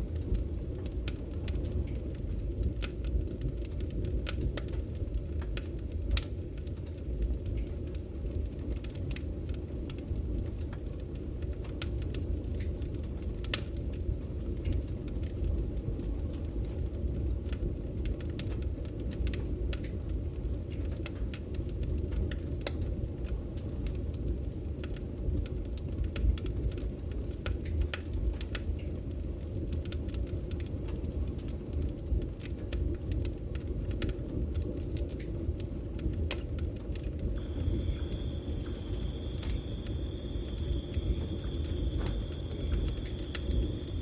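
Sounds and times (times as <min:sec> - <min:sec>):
campfire crackling and popping: 0:23.6 - 0:44.0
low rush of fire: 0:37.4 - 0:44.0.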